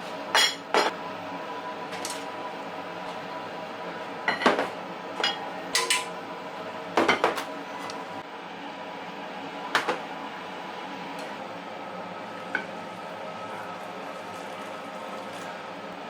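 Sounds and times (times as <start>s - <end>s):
steady background hum: 0.0s - 16.0s
dishes and utensils clinking: 4.3s - 6.1s.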